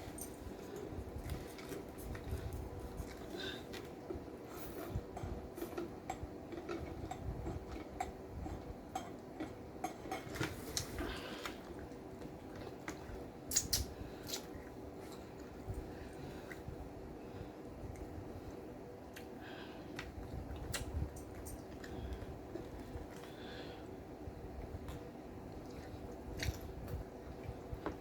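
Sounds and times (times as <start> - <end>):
person chewing a sandwich: 0.0 - 28.0.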